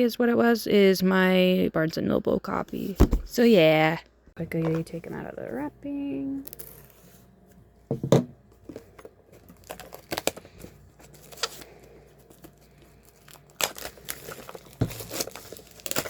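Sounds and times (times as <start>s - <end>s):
plastic wrap crinkling and tearing: 9.4s - 16.0s.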